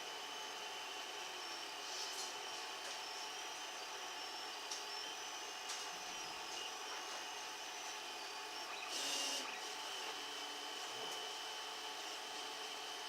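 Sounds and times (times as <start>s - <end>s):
machine whining: 0.0s - 13.0s.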